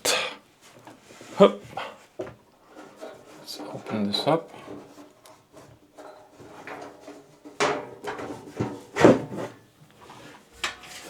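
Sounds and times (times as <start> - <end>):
computer case panel scraping: 2.7 - 11.0.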